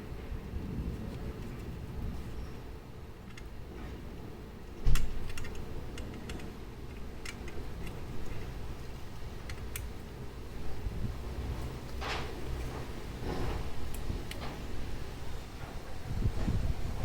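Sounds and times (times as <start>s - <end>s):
small metal clicks and taps: 3.2s - 3.5s, 4.9s - 8.5s, 9.4s - 10.0s.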